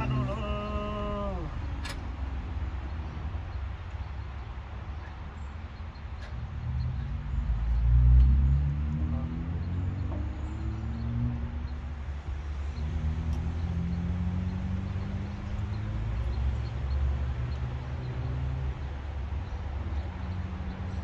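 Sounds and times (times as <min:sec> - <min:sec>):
engine humming: 0:00.0 - 0:21.0.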